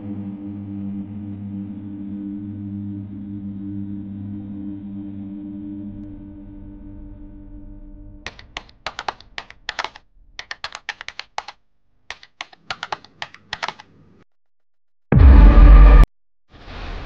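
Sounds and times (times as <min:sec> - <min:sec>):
keyboard typing clicks: 0:08.3 - 0:14.0.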